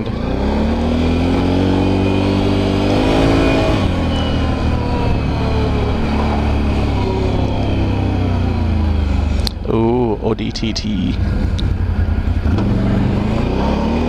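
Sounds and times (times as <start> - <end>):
atv engine pulling: 0.0 - 14.0
low rumble: 3.2 - 14.0.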